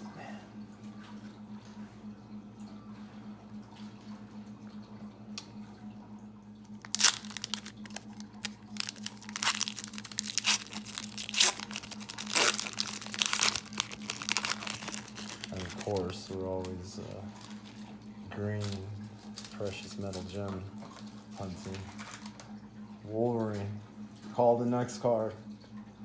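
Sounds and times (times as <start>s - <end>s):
steady low hum: 0.0s - 26.0s
wrapper tearing and crinkling: 6.8s - 16.7s, 17.3s - 17.7s.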